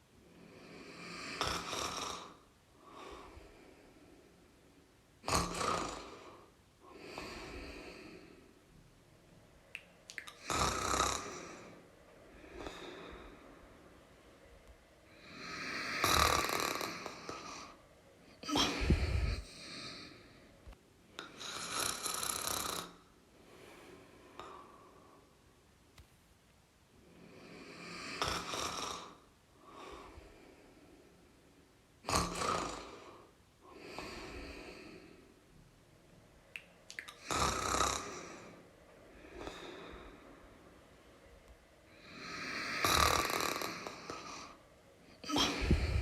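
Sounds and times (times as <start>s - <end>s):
person snoring: 0.4s - 3.4s, 5.2s - 8.4s, 10.3s - 11.8s, 15.1s - 17.8s, 18.4s - 20.3s, 21.3s - 23.1s, 27.2s - 30.2s, 32.1s - 35.2s, 36.9s - 38.6s, 42.0s - 44.6s, 45.2s - 46.0s.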